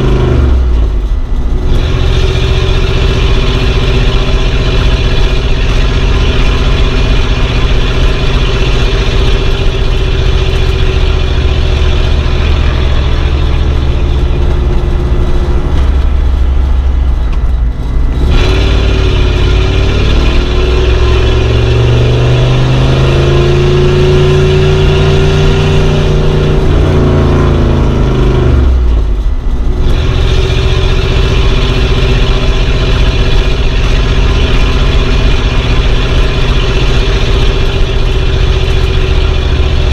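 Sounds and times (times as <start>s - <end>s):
car engine running: 0.0s - 39.9s.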